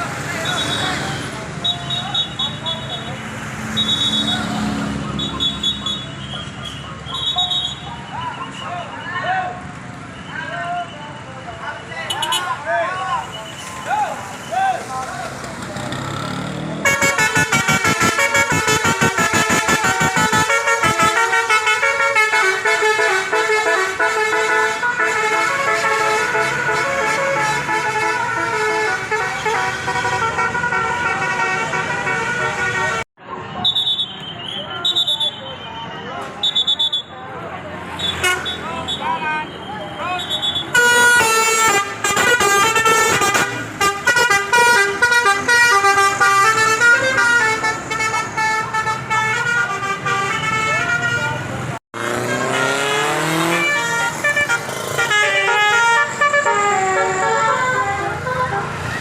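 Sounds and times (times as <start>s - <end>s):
multi-tone bus horns playing tune: 16.8s - 33.1s, 38.0s - 39.0s, 40.4s - 59.0s.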